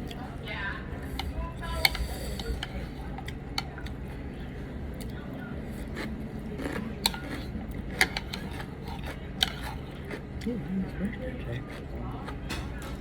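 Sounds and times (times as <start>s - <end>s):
steady room hum: 0.0s - 13.0s
utensils clicking against bowl: 1.2s - 4.0s, 7.0s - 9.8s.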